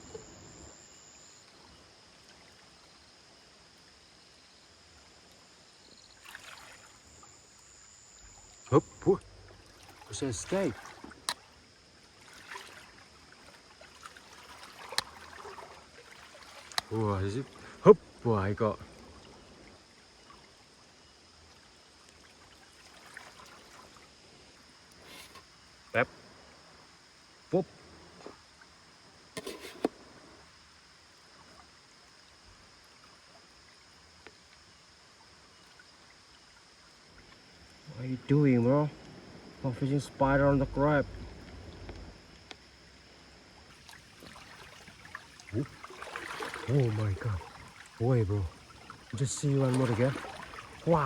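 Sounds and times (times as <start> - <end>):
faint outdoor hiss by river: 0.0 - 51.0
river trickling over stones: 43.6 - 51.0.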